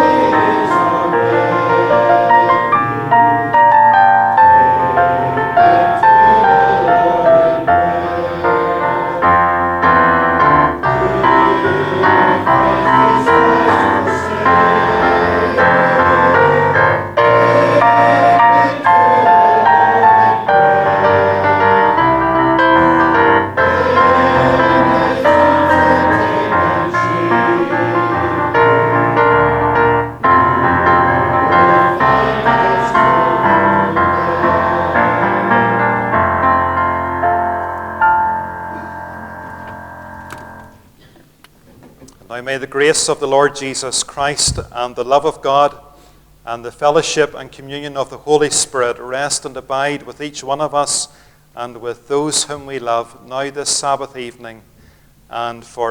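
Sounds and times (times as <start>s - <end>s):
piano playing hymn chords: 0.0s - 41.5s.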